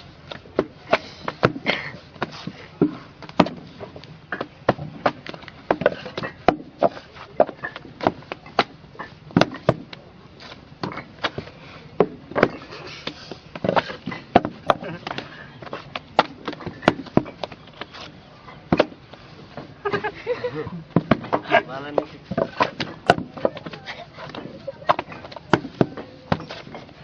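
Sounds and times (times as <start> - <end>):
hammering roofing nails: 21.0 - 26.5.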